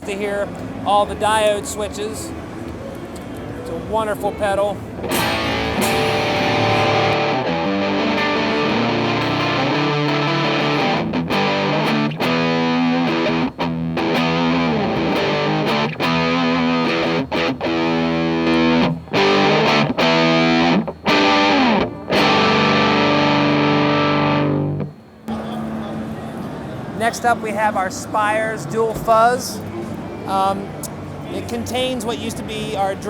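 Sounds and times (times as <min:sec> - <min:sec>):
distorted electric guitar chords: 0:05.0 - 0:25.0.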